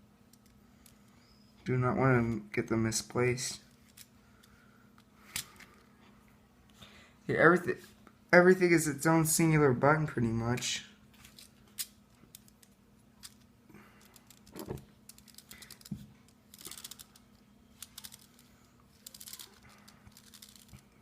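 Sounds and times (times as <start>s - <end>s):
plastic parts clicking and rattling: 11.2s - 21.0s.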